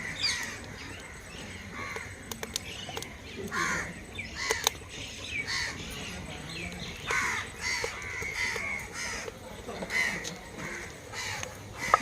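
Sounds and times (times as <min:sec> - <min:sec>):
bird calling: 0:00.0 - 0:12.0
sharp clicks: 0:01.9 - 0:03.6, 0:04.4 - 0:04.9.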